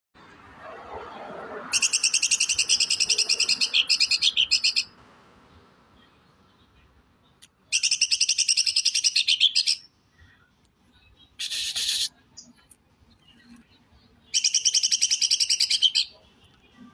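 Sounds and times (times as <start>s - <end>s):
bird singing rasping rapid notes: 1.7s - 5.0s, 7.7s - 9.9s, 11.2s - 16.2s.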